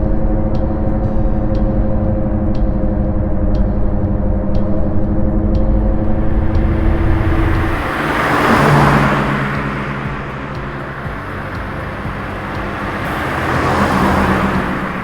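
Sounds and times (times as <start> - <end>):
car engine running: 0.0 - 15.0
whoosh of car passing by: 5.7 - 15.0.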